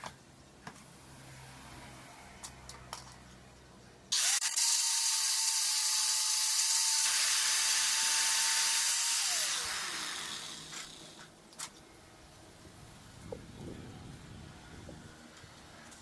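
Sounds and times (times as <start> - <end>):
angle grinder on steel: 4.1 - 11.3.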